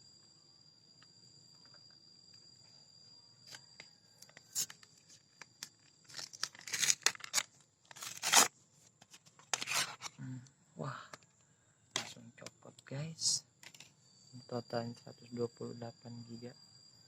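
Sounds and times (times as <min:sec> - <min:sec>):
packaging crinkling: 0:04.3 - 0:10.1
packaging tearing: 0:04.5 - 0:04.8, 0:06.1 - 0:08.5, 0:09.4 - 0:10.1.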